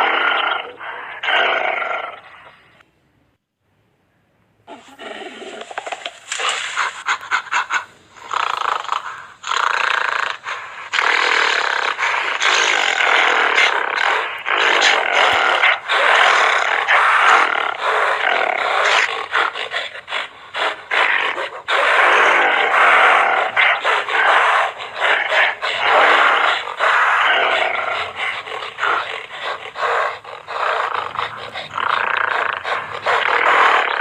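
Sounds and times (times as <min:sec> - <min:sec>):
large animal roaring and grunting: 0:00.0 - 0:02.5, 0:10.9 - 0:34.0.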